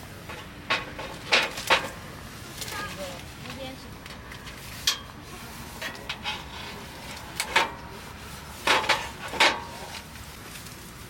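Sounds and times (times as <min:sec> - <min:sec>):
short knocks and scrapes: 0:04.4 - 0:10.1.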